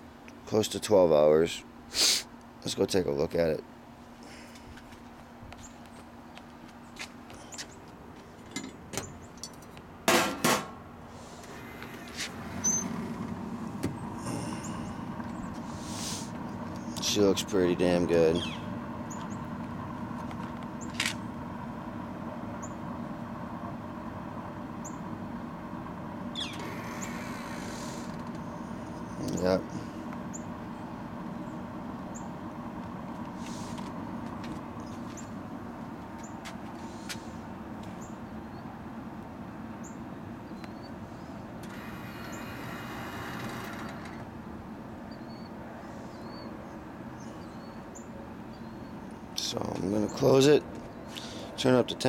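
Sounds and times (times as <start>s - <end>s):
fan humming: 0.0s - 52.0s
low outdoor rumble: 0.0s - 52.0s
brief hiss: 1.9s - 2.3s, 15.7s - 16.3s
loud hiss: 1.9s - 2.3s, 15.6s - 16.4s, 26.6s - 28.2s
small birds chirping: 5.6s - 8.0s, 11.2s - 19.7s, 24.8s - 25.2s, 26.3s - 32.4s, 34.6s - 35.4s, 36.1s - 38.8s, 39.8s - 41.6s, 45.0s - 51.6s.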